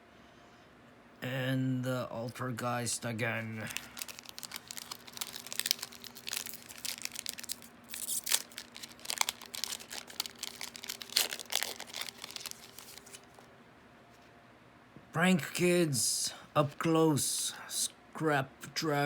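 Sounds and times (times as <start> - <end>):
foil wrapper crinkling: 3.6 - 13.5
cards being handled: 3.7 - 13.4.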